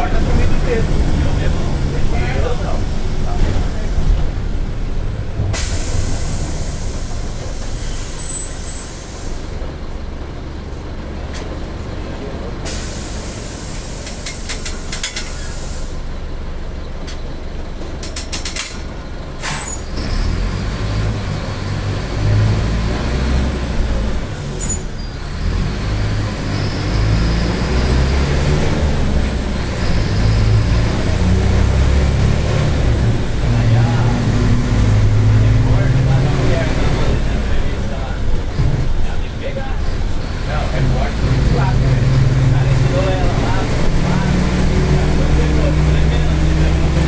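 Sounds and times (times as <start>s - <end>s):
diesel engine rumble: 0.0s - 47.0s
air brake hissing: 5.2s - 9.5s, 12.6s - 16.0s, 19.4s - 19.9s
sharp air release: 5.4s - 7.1s, 7.8s - 9.4s, 12.7s - 16.0s, 19.4s - 19.9s.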